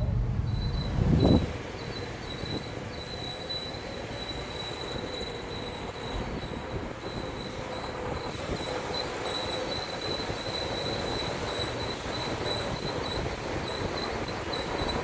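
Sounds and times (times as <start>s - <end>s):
low rumble: 0.0s - 1.6s
brakes squealing: 0.0s - 15.0s.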